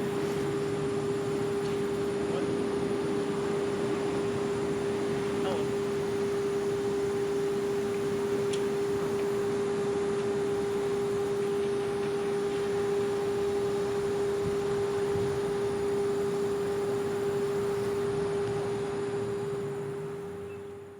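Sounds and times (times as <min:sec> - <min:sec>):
warning siren steady tone: 0:00.0 - 0:20.9.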